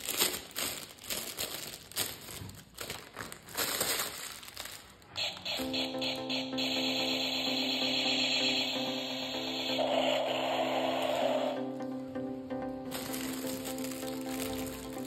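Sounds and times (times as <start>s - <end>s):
plastic packaging crinkling: 0.0s - 5.6s, 12.9s - 15.0s
electronic beeps and tones: 5.2s - 12.7s.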